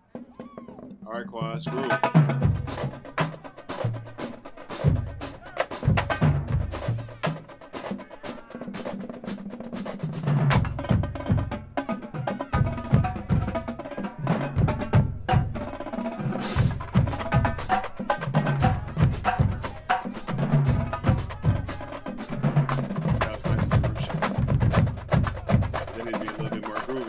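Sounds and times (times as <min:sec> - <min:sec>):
snare and quad drum strokes: 0:00.2 - 0:27.0
low bass drum notes: 0:04.8 - 0:07.3, 0:22.6 - 0:26.8.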